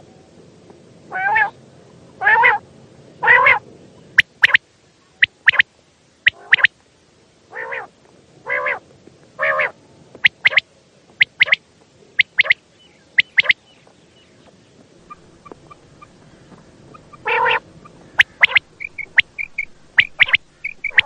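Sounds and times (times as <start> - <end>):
quail calling: 1.1 - 1.6, 2.2 - 2.6, 3.2 - 3.6, 4.2 - 4.6, 5.2 - 5.6, 6.2 - 6.7, 7.5 - 7.9, 8.5 - 8.8, 9.4 - 10.6, 11.2 - 11.6, 12.2 - 13.6, 15.0 - 21.0.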